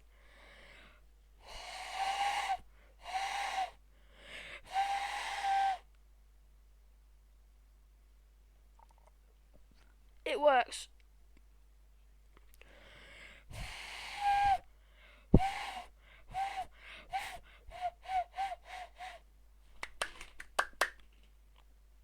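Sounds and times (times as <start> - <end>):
cupped-hands whistle hooting: 1.4 - 3.8, 4.6 - 5.9, 13.5 - 14.7, 15.4 - 19.2.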